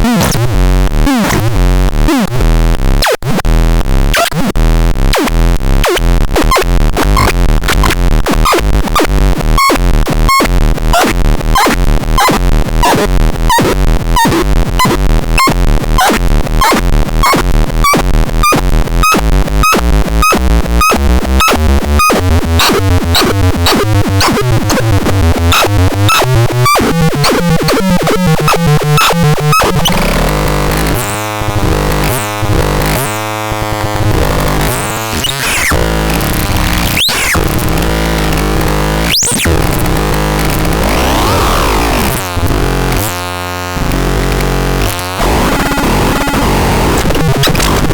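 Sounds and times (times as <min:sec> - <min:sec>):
noisy glitchy synth wash: 0:14.2 - 0:47.9
fast synth pulses: 0:15.4 - 0:47.9.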